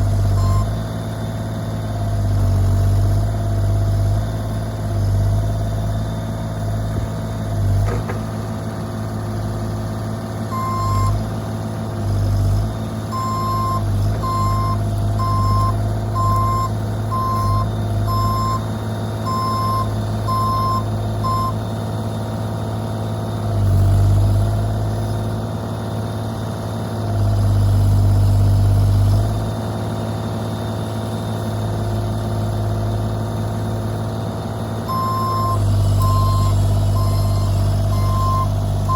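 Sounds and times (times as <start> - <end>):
excavator diesel engine running: 0.0 - 38.9
travel alarm beeping: 10.5 - 11.1, 13.1 - 21.6, 34.9 - 38.9.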